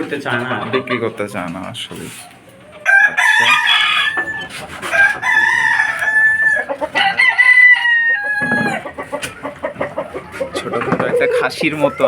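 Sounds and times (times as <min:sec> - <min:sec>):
roosters crowing: 0:02.4 - 0:12.0.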